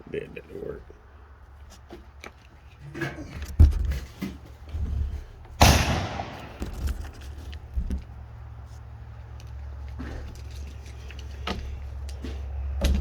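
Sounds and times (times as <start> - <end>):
gunshot with ringing echo: 5.6 - 6.6.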